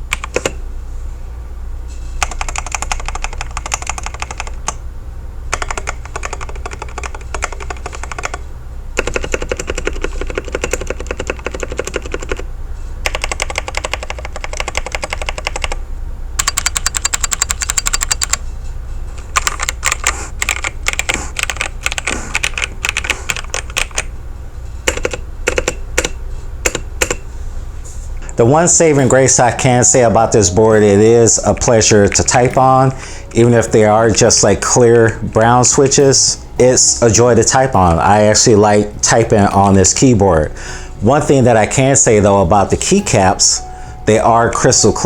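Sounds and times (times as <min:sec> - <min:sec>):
mechanical keyboard typing: 0:00.1 - 0:00.6, 0:02.2 - 0:04.8, 0:05.5 - 0:08.4, 0:09.0 - 0:12.4, 0:13.0 - 0:15.8, 0:16.4 - 0:18.4, 0:19.2 - 0:24.1, 0:24.8 - 0:27.2.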